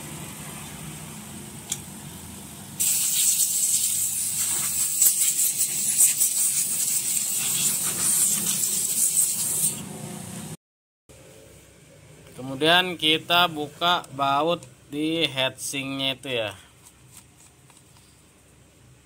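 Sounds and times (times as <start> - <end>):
compressed air hissing: 2.8 - 9.8.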